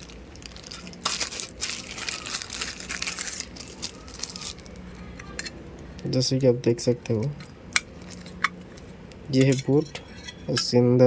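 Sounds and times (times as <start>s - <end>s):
packaging crinkling: 0.0s - 6.1s, 7.8s - 8.9s.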